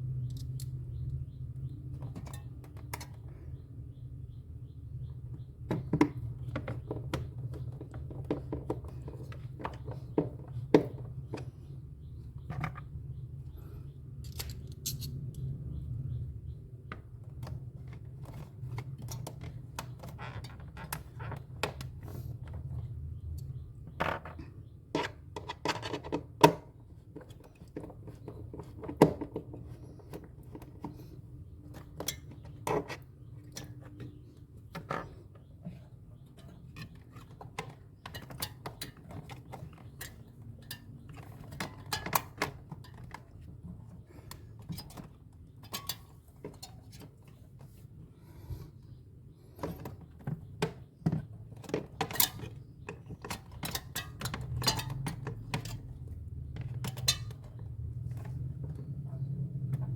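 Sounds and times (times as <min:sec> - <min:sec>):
tools and parts clinking: 0:14.2 - 0:15.5, 0:51.1 - 0:58.5.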